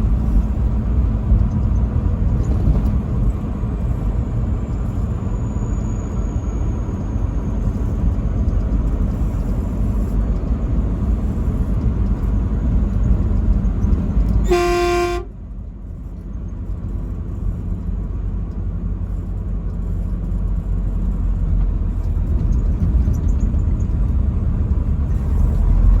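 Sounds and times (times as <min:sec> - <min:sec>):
vehicle road rumble: 0:00.0 - 0:26.0
truck horn blast: 0:14.4 - 0:15.4.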